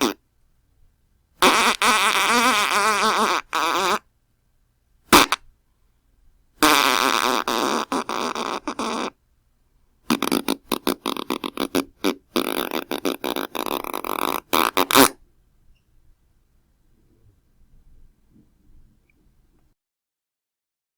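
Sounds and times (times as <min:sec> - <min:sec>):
fart sounds: 0:00.0 - 0:00.2, 0:01.4 - 0:04.0, 0:05.1 - 0:05.4, 0:06.6 - 0:09.2, 0:10.1 - 0:15.2.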